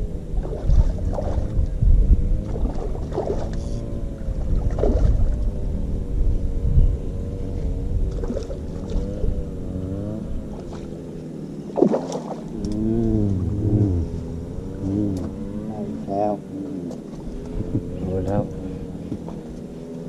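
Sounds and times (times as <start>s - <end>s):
engine droning: 0.0s - 20.0s
low rumble: 0.0s - 20.0s.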